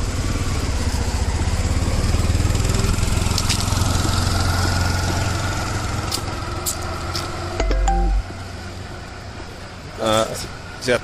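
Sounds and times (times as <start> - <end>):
small engine idling: 0.0 - 6.6.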